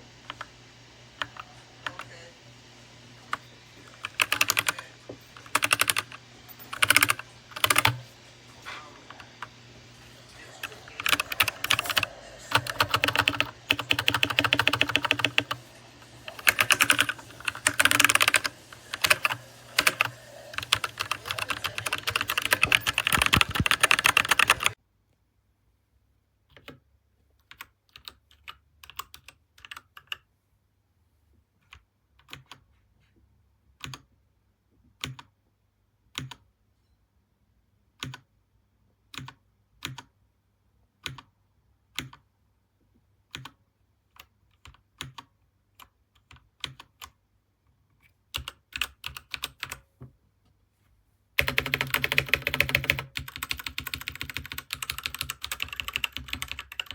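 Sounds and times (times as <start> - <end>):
mechanical keyboard typing: 1.2 - 2.3, 3.2 - 8.1, 10.3 - 24.8, 27.4 - 30.3, 31.6 - 32.6, 33.8 - 34.1, 35.0 - 35.4, 36.1 - 36.5, 38.0 - 38.3, 39.1 - 40.2, 41.0 - 41.3, 41.9 - 42.3, 43.3 - 47.2, 48.3 - 49.8, 51.4 - 56.9.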